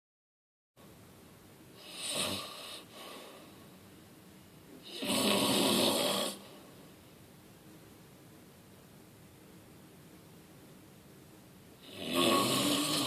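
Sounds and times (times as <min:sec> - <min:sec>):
person snoring: 0:01.8 - 0:03.5, 0:04.8 - 0:06.7, 0:11.8 - 0:13.0.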